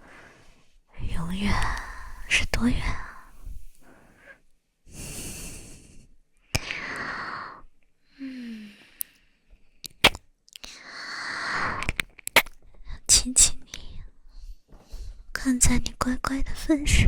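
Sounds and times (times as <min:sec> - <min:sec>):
mouth clicks: 0:06.5 - 0:07.1, 0:09.8 - 0:10.8, 0:11.6 - 0:12.6.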